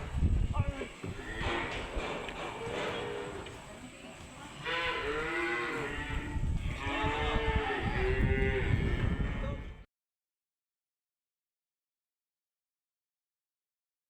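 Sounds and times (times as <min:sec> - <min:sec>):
cows mooing: 0:01.1 - 0:03.6, 0:04.6 - 0:09.6.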